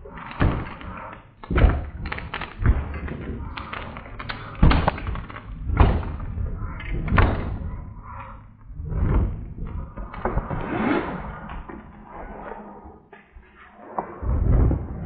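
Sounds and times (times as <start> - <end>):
knocks and thumps: 0.1 - 10.7.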